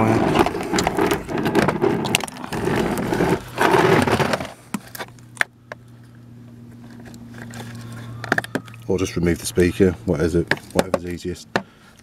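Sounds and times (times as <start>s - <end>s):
plastic scraping and rattling: 0.0s - 5.2s
low steady hum: 0.0s - 12.0s.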